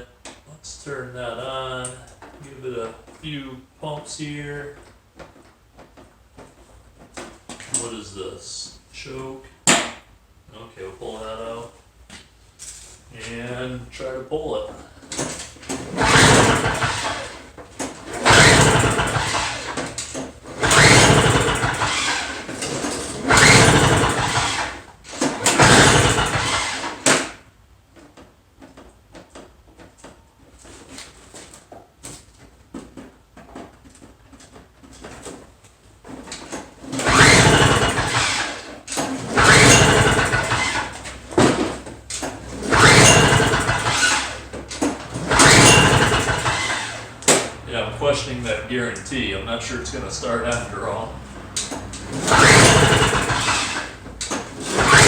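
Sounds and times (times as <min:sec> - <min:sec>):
recoil starter pulls: 0:15.1 - 0:27.4, 0:36.1 - 0:55.0
engine turning over briefly: 0:15.8 - 0:17.5, 0:18.1 - 0:27.4, 0:37.0 - 0:41.1, 0:42.4 - 0:44.5, 0:45.1 - 0:47.2, 0:51.6 - 0:55.0.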